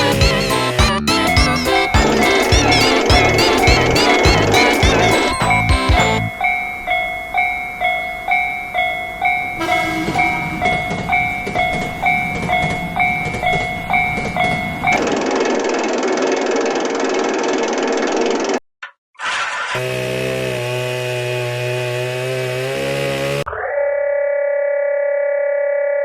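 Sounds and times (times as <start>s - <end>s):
level crossing bell dinging: 0.0s - 15.0s
rumbling noise: 9.5s - 18.2s.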